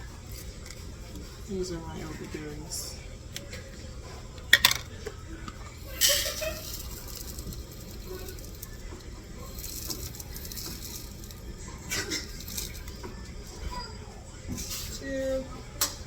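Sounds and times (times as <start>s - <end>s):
dried berries rattling pour: 5.8s - 11.5s, 12.2s - 12.9s.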